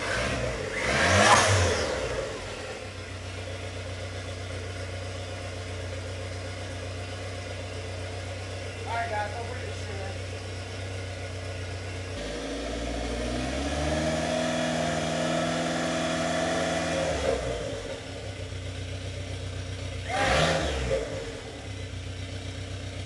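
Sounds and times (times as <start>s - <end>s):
car engine revving: 0.0s - 4.8s, 8.7s - 23.0s.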